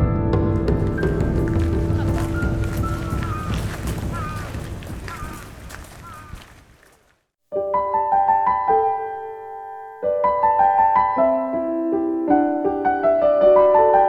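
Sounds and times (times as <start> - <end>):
gentle piano melody: 7.5 - 14.0.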